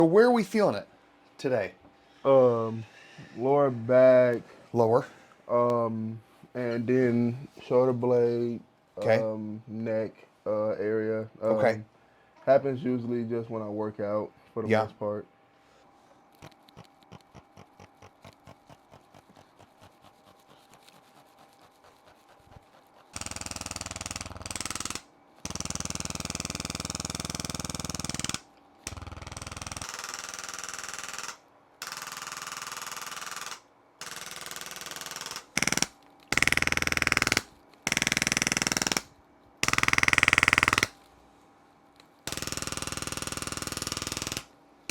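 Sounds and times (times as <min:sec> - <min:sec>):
regular clicks: 0:16.3 - 0:18.8, 0:28.0 - 0:39.0.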